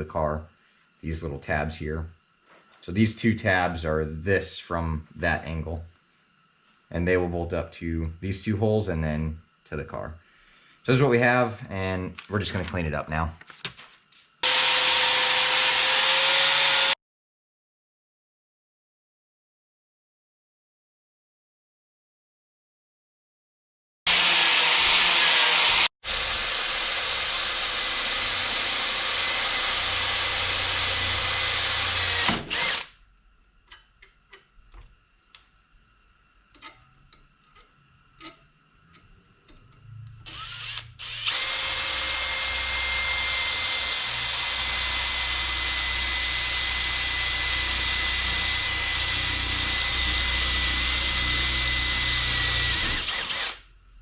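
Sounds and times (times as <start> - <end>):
power grinder whining: 14.4 - 17.0, 24.1 - 32.9, 40.2 - 53.6.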